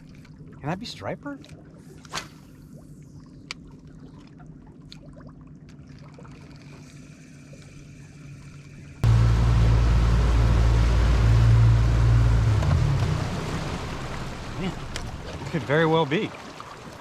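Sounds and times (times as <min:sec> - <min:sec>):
water noise: 0:00.0 - 0:17.0
faint low hum: 0:07.0 - 0:15.6
boat engine running: 0:09.0 - 0:16.4.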